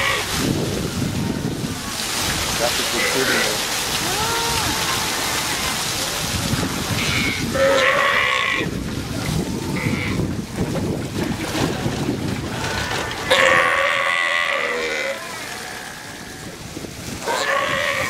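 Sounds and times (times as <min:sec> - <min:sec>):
sea lions burp-like calls: 0:00.0 - 0:00.4, 0:02.9 - 0:03.6, 0:06.9 - 0:08.7, 0:09.4 - 0:10.4, 0:12.4 - 0:16.6, 0:17.2 - 0:18.0
wind noise on microphone: 0:00.0 - 0:03.0, 0:03.6 - 0:14.0, 0:15.7 - 0:18.0.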